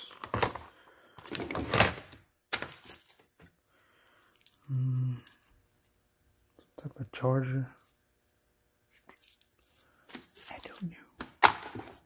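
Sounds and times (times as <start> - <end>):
rustling and clunking of tools: 0.0 - 3.6, 11.2 - 12.0
man humming: 4.7 - 5.2.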